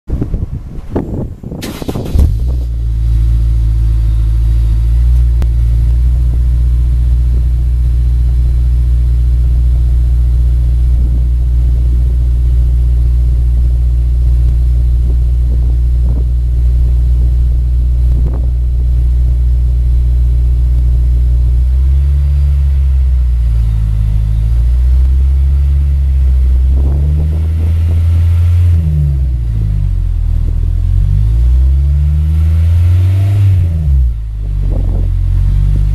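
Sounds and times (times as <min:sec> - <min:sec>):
car engine idling and revving: 0:00.1 - 0:35.9.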